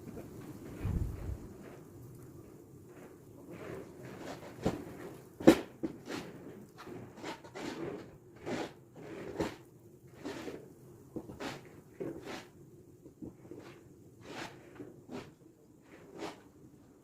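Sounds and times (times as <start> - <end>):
rustling: 0.4 - 1.8.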